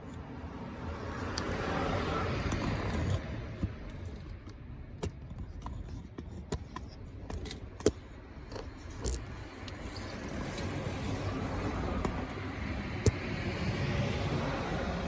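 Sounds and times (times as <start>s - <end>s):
light metallic clinks and taps: 2.4s - 11.4s.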